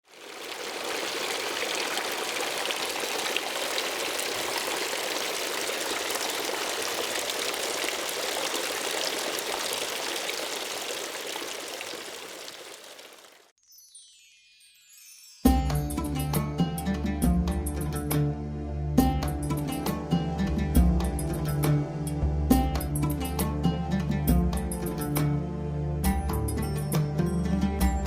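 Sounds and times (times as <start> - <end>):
fountain water splashing into basin: 0.0 - 13.5.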